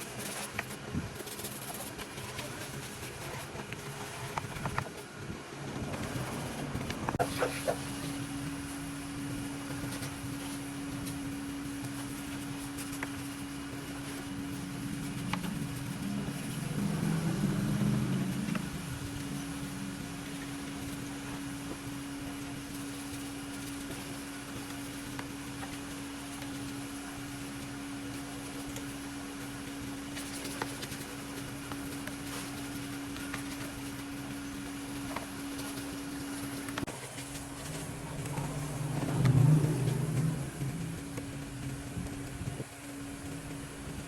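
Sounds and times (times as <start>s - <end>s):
machine humming: 0.0s - 44.0s
loud rumble: 14.1s - 22.1s, 37.2s - 44.0s.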